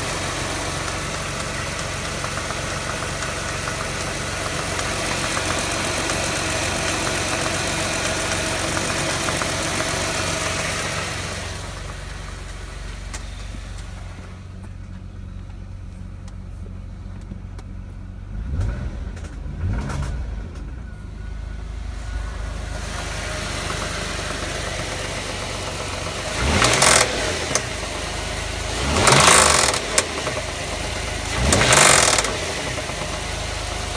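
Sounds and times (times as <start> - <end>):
engine revving: 0.0 - 14.4, 18.2 - 33.9
car engine idling: 0.0 - 33.9.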